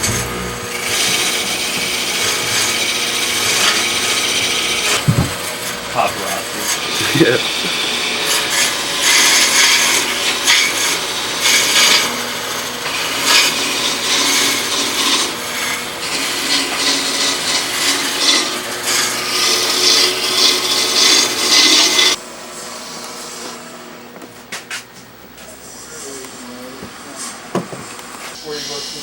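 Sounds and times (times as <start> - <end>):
tool scraping turning wood: 0.0 - 22.2
lathe hum: 0.0 - 29.0.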